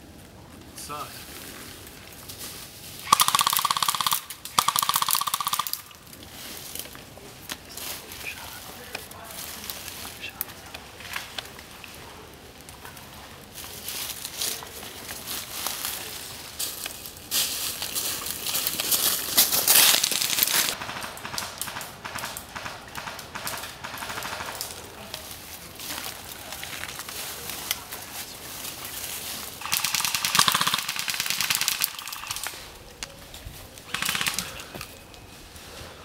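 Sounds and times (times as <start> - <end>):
airsoft guns firing bursts: 3.0 - 5.9, 20.4 - 24.8, 29.6 - 32.5, 33.9 - 34.7.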